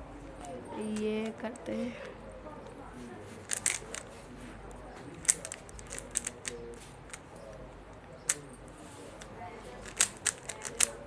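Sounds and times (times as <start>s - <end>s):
puzzle cube layers clicking: 3.4s - 4.2s, 5.1s - 7.3s, 9.2s - 11.0s.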